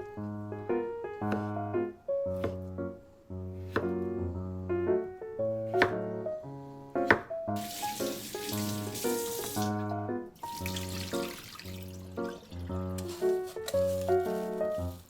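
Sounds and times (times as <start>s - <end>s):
plucked piano-like background music: 0.0s - 15.0s
water running from tap into sink: 7.6s - 13.2s.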